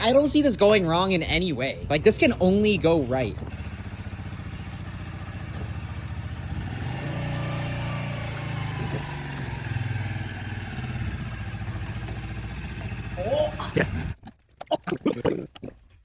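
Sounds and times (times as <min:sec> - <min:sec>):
motorcycle engine revving: 0:00.0 - 0:14.2.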